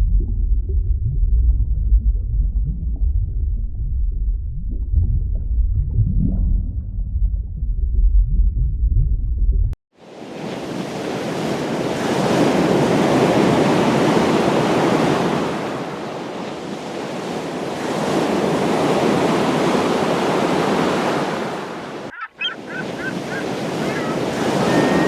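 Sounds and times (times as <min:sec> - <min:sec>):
ocean surf washing in: 0:10.0 - 0:25.0.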